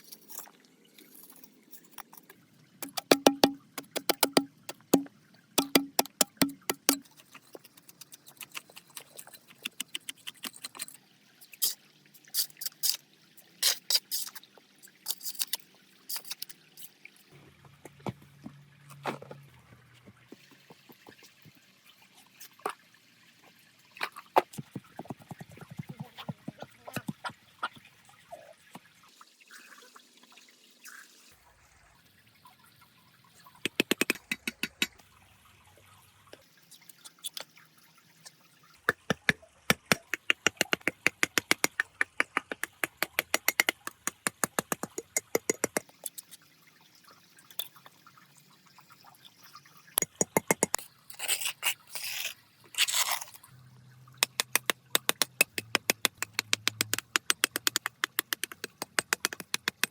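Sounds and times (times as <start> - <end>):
rapid small taps: 2.8 - 10.7, 33.6 - 35.0, 38.9 - 46.0, 50.0 - 50.8, 54.2 - 59.9.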